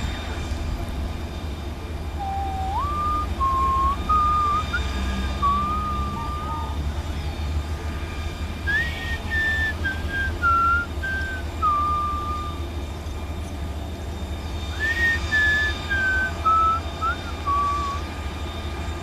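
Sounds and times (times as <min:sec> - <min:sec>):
steady low rumble: 0:00.0 - 0:19.0
person whistling a slow tune: 0:02.2 - 0:06.8, 0:08.7 - 0:12.6, 0:14.7 - 0:18.2.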